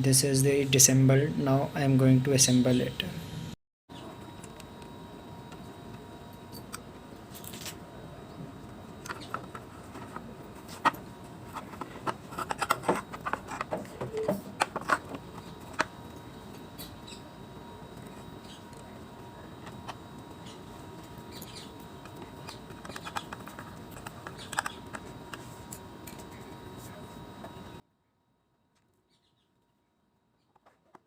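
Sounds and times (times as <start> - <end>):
plastic and metal parts clicking: 22.0 - 25.4.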